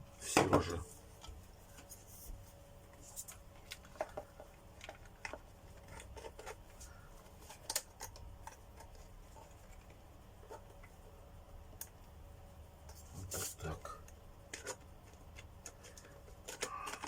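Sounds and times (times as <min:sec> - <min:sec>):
plastic parts clicking and tapping: 0:03.2 - 0:11.0, 0:14.0 - 0:17.0.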